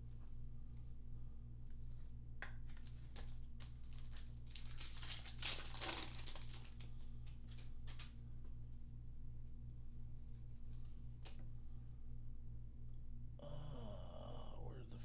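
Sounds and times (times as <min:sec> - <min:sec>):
plastic wrapper crinkling: 0:02.7 - 0:08.1.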